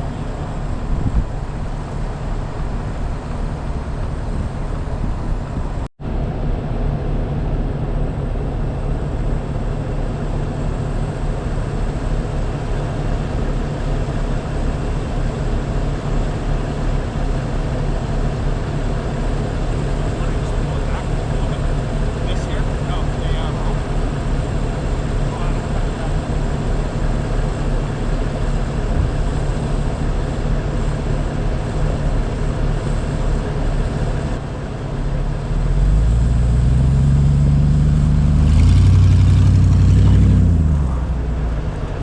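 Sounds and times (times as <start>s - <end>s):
vehicle engine and road noise: 0.0s - 42.0s.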